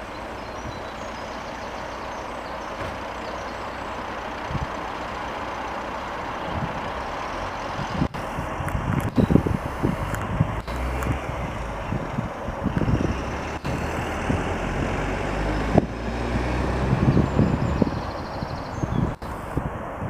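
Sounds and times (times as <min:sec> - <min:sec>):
wind buffeting microphone: 0:00.0 - 0:01.3, 0:04.3 - 0:04.9, 0:06.4 - 0:20.0
passing train rumble: 0:00.0 - 0:20.0.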